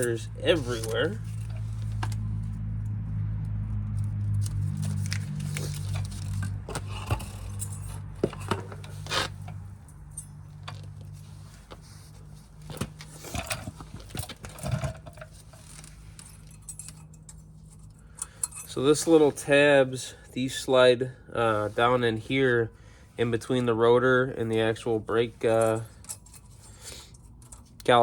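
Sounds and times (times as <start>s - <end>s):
steady low hum: 0.0s - 27.9s
metal clips clinking: 4.4s - 11.2s, 12.7s - 18.8s.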